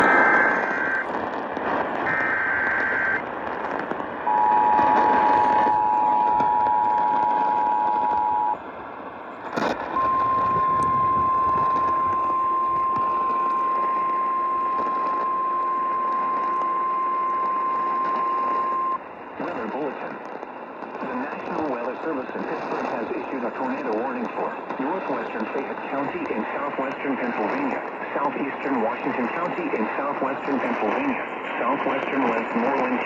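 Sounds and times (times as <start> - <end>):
warbling digital data header: 0.0 - 1.1, 2.0 - 3.2, 4.3 - 8.6, 10.0 - 19.0
radio static: 0.0 - 8.8, 9.4 - 33.0
two-tone attention signal: 2.1 - 3.2, 4.3 - 8.6, 10.0 - 19.0.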